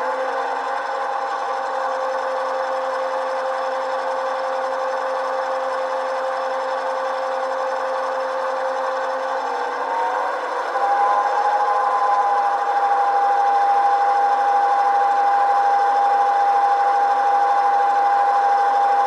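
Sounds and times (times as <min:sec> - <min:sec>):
diesel engine through small speakers: 0:00.0 - 0:19.0.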